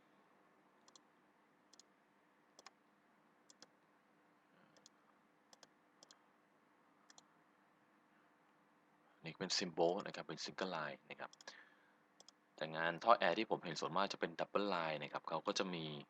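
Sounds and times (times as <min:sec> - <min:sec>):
faint steady hum: 0:00.0 - 0:16.0
computer mouse clicking: 0:00.8 - 0:01.1, 0:01.7 - 0:01.9, 0:02.6 - 0:02.8, 0:03.5 - 0:03.8, 0:04.7 - 0:06.2, 0:07.1 - 0:07.3, 0:11.3 - 0:11.6, 0:12.2 - 0:12.4.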